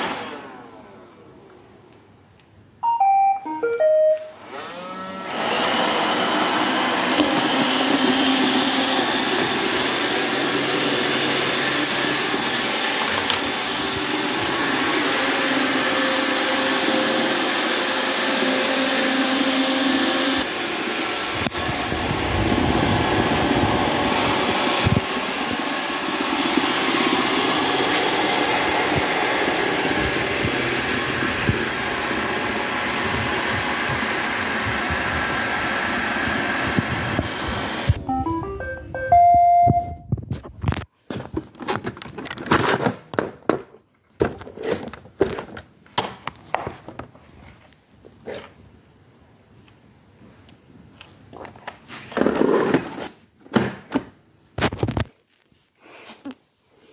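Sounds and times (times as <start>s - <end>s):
robot vacuum whirring: 4.4s - 38.0s.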